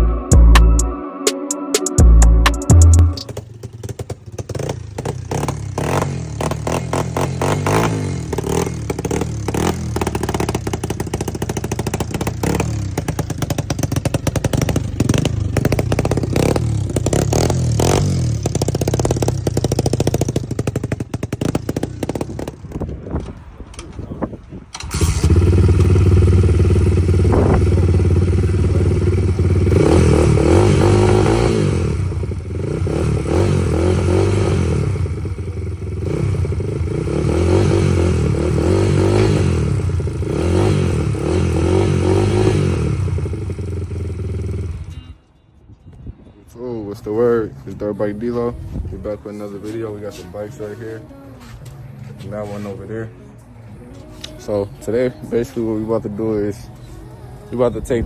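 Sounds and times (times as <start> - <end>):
dirt bike engine revving: 2.9 - 22.8, 24.8 - 45.0.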